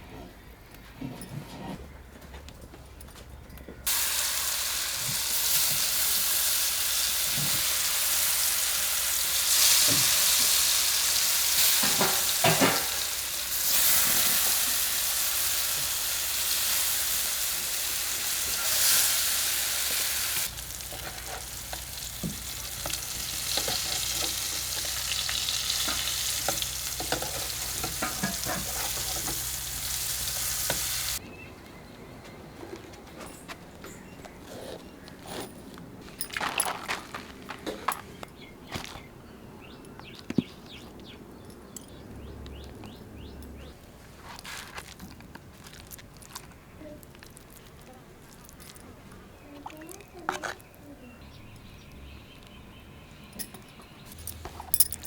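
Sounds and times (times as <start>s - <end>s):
banana sizzling in hot oil: 3.9s - 31.2s.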